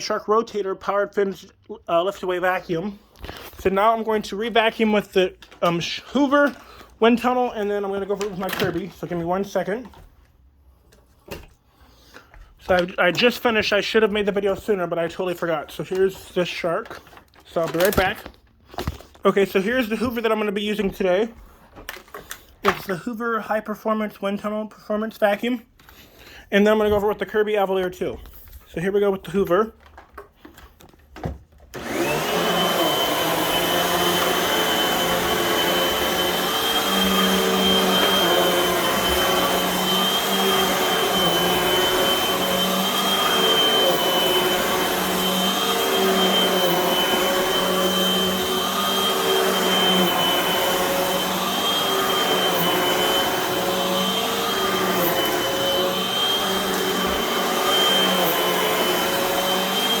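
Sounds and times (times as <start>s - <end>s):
vacuum cleaner running: 2.0s - 10.0s, 31.7s - 60.0s.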